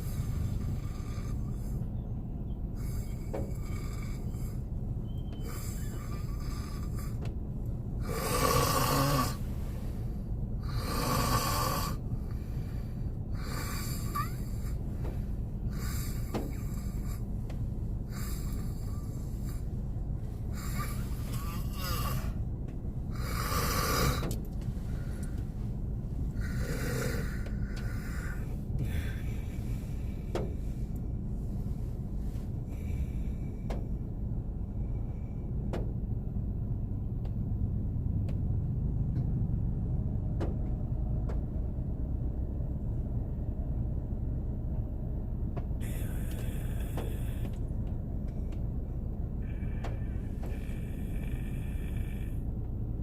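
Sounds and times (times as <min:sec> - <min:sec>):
man snoring: 0:00.0 - 0:01.6, 0:03.0 - 0:04.6, 0:05.5 - 0:07.2, 0:08.0 - 0:09.5, 0:10.6 - 0:12.1, 0:13.4 - 0:14.8, 0:20.5 - 0:22.4, 0:23.1 - 0:24.4, 0:26.4 - 0:29.4, 0:45.8 - 0:47.6, 0:49.4 - 0:52.5
idling car rumble: 0:00.0 - 0:53.0.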